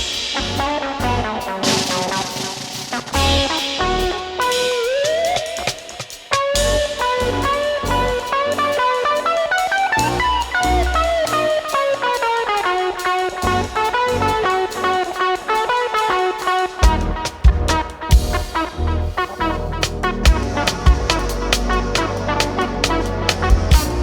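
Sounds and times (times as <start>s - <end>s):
drum kit: 0.0s - 24.0s
deep bass: 3.2s - 4.2s, 16.8s - 24.0s.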